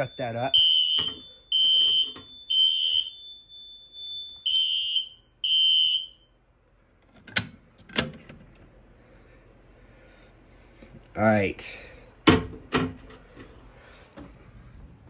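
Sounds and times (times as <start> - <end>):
fire alarm horns: 0.0 - 6.4.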